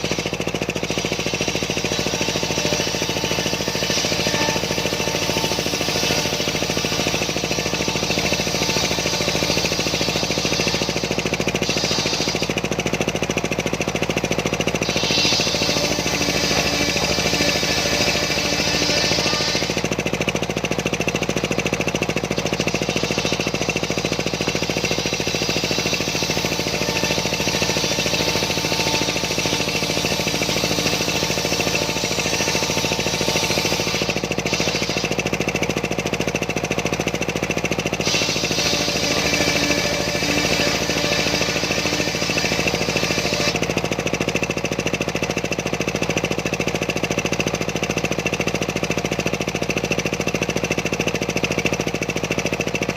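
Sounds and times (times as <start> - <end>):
saw blade cutting hiss: 0.0 - 13.0, 14.6 - 36.3, 37.8 - 43.8
sawmill engine running: 0.0 - 52.9.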